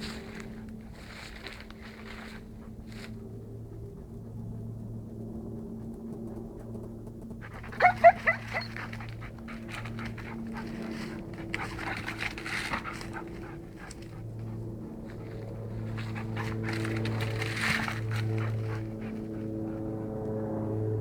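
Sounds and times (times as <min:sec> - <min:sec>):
dog panting: 0:01.8 - 0:20.2
dog whining: 0:07.4 - 0:10.7.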